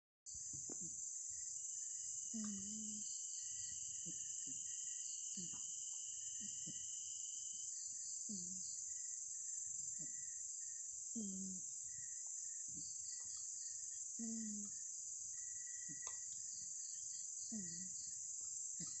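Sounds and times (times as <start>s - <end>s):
insects chirring: 0.3s - 19.0s
cat snoring: 2.3s - 3.0s.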